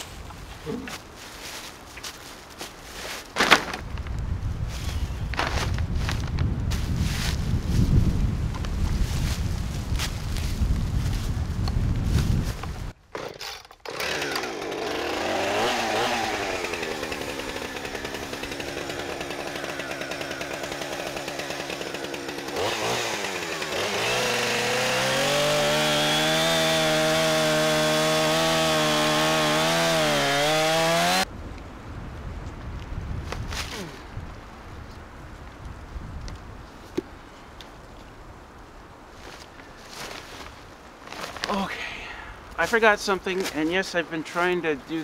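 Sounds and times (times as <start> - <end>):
chainsaw running: 13.1 - 31.2.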